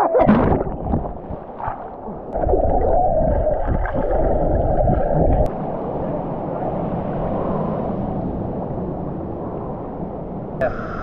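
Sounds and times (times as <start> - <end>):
churning water rushing: 0.0 - 7.6.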